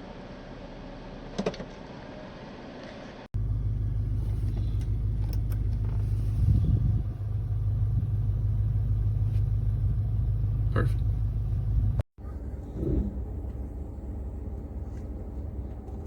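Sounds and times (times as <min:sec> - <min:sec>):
vehicle engine hum: 0:00.0 - 0:16.0
deep engine rumble: 0:03.3 - 0:16.0.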